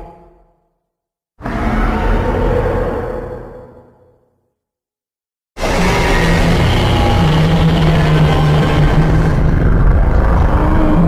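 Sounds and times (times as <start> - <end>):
low monster call: 5.6 - 11.0.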